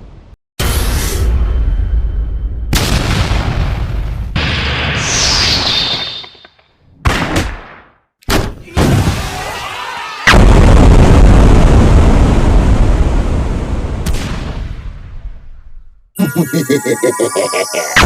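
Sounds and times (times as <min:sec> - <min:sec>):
big rumbling explosion: 0:02.7 - 0:04.7, 0:10.3 - 0:15.4.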